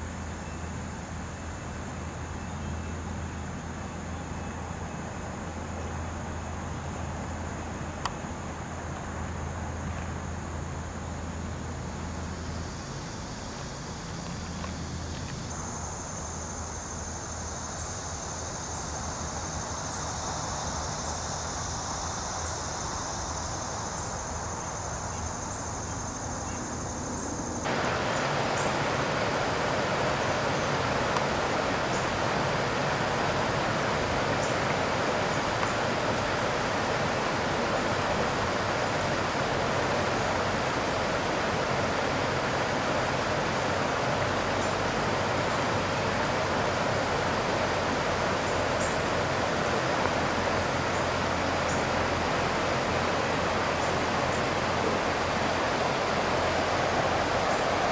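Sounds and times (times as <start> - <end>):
insects trilling: 0.0 - 57.9
steady rushing noise: 14.8 - 38.8, 47.0 - 57.9.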